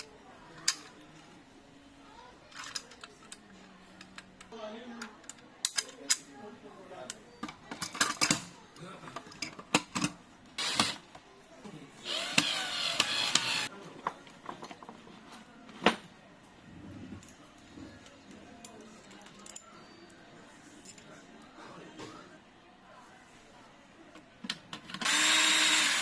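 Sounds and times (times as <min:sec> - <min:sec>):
metal lock parts clicking: 0:05.2 - 0:06.3.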